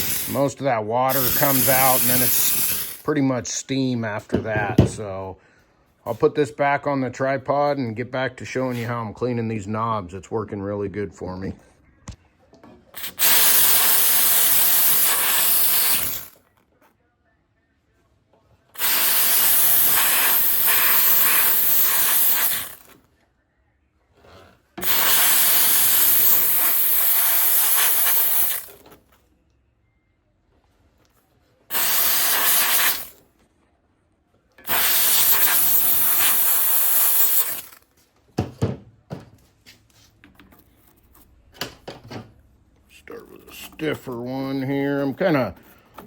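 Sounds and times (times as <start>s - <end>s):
steam cleaner hissing: 0.0s - 3.1s, 13.0s - 16.4s, 18.8s - 22.9s, 24.8s - 28.8s, 31.7s - 33.2s, 34.6s - 37.8s.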